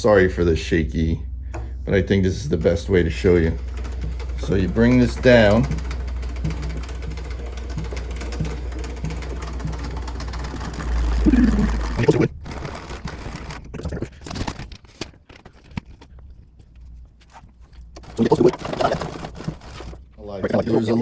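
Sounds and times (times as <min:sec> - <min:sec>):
planer crank whirring: 0:01.5 - 0:14.6, 0:18.0 - 0:21.0.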